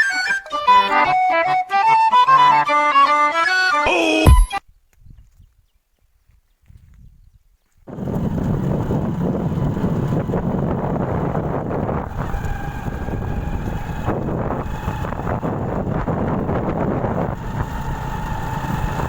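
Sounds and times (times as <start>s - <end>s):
wind rushing over microphone: 6.7s - 19.0s
faint motorcycle engine: 7.9s - 19.0s.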